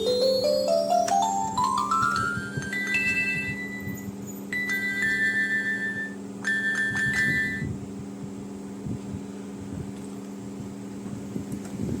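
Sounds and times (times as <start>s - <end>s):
keyboard chime-like notes: 0.0s - 7.7s
steady low hum: 0.0s - 12.0s.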